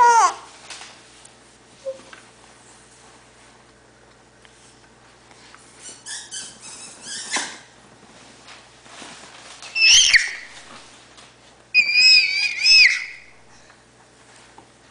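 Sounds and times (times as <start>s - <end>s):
baby squealing: 0.0s - 0.4s, 9.8s - 10.6s, 11.8s - 13.4s.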